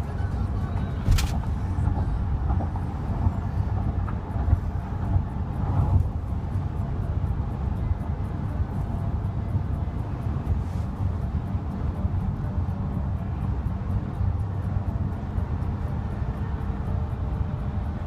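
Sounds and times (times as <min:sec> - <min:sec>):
car cabin rumble: 0:00.0 - 0:07.2
sharp click: 0:01.0 - 0:01.5.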